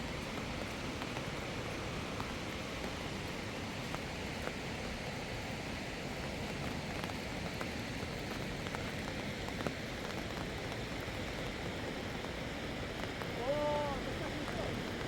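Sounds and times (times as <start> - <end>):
sharp raindrop ticks: 0.0 - 15.0
steady rain falling: 0.0 - 15.0.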